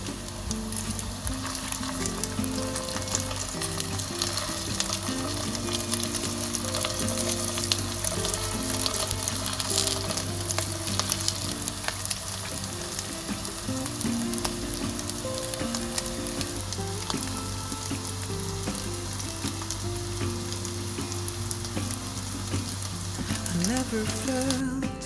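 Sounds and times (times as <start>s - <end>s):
food sizzling in a frying pan: 0.0s - 24.6s
soft instrumental music: 0.0s - 25.0s.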